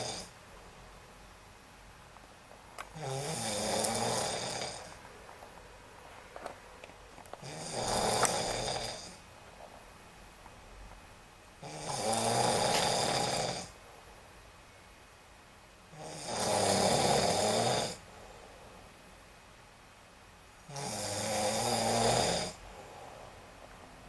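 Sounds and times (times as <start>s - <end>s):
person snoring: 0.0s - 0.3s, 2.9s - 5.0s, 7.4s - 9.2s, 11.6s - 13.8s, 16.0s - 18.0s, 20.7s - 22.6s.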